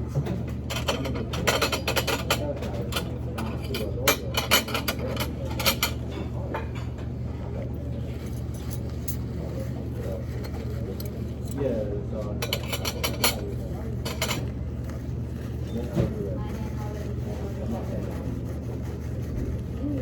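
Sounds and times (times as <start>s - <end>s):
cutlery and dishes clinking: 0.6s - 7.0s, 12.3s - 14.5s.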